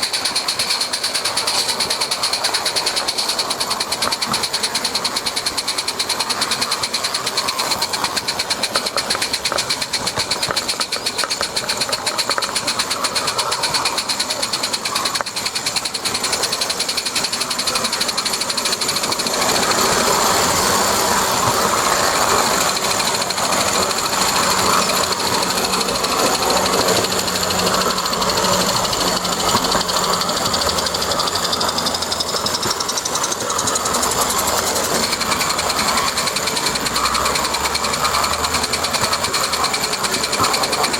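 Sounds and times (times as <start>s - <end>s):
model train clattering on track: 0.0s - 40.9s.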